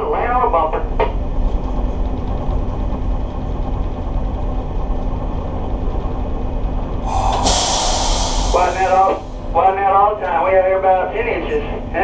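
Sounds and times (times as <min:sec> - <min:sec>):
boat engines rumbling: 0:07.1 - 0:09.7.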